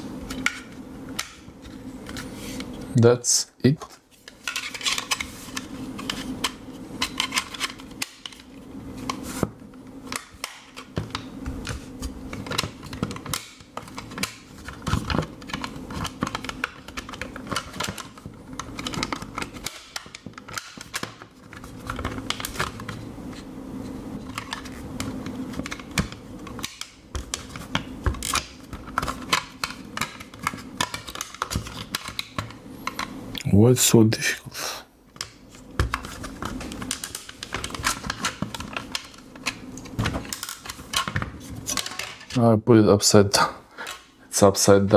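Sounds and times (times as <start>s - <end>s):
faint hum: 32.6s - 35.2s.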